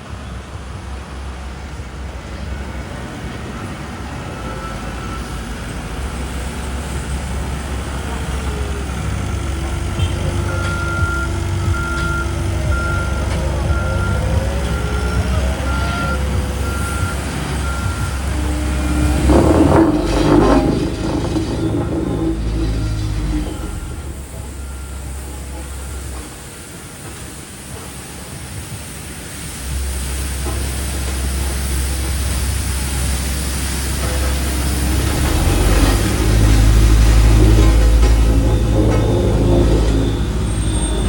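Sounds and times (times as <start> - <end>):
diesel roller engine rumbling: 0.0 - 41.0
back-up alarm beeping: 9.6 - 26.4.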